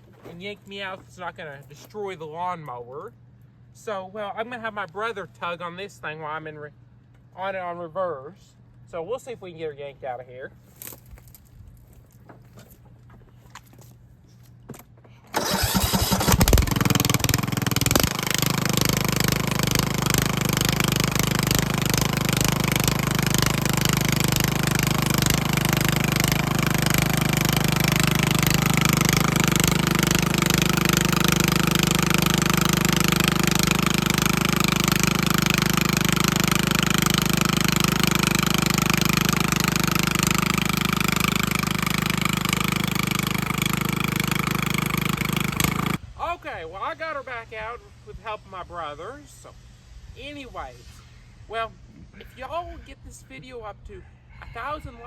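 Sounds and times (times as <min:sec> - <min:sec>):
lawnmower engine running: 0:15.3 - 0:46.0.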